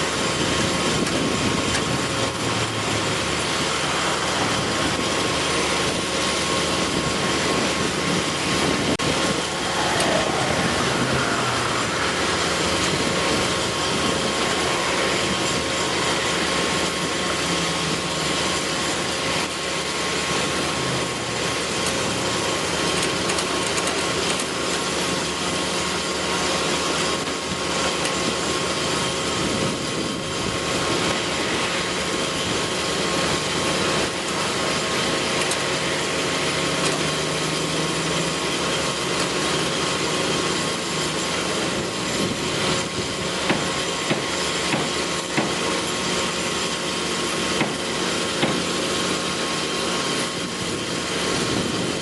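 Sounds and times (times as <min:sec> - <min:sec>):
steady motor whirring: 0:00.0 - 0:25.7.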